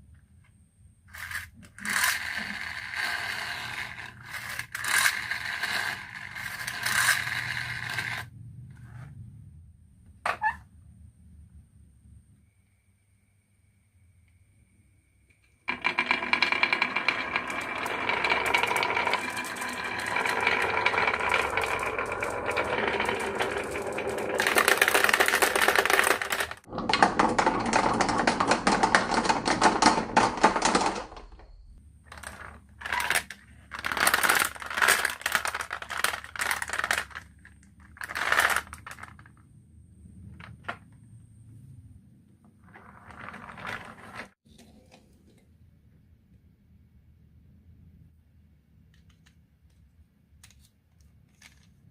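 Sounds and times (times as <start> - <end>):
marbles rattling down wooden run: 1.1 - 8.3, 15.7 - 31.2, 32.1 - 39.3, 42.7 - 44.4.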